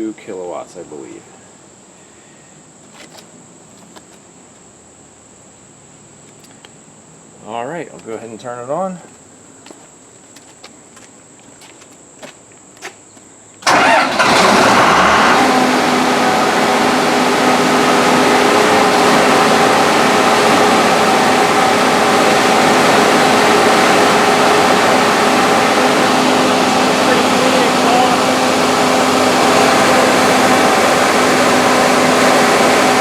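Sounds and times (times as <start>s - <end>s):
diesel generator starting and running: 13.6s - 33.0s.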